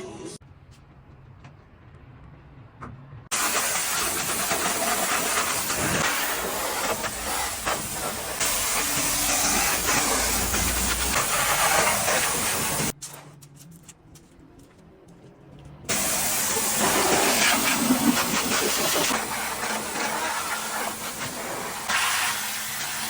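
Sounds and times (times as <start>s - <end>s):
loud hissing jet: 3.3s - 13.0s, 15.9s - 23.0s.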